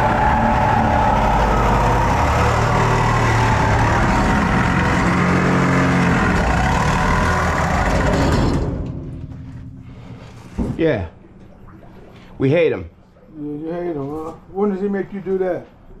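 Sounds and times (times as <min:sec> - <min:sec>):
motor-driven machine droning: 0:00.0 - 0:10.4.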